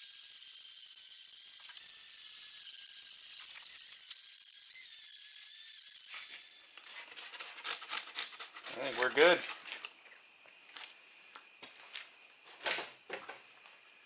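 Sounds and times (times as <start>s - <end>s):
drill sanding pad hissing: 0.0s - 7.0s.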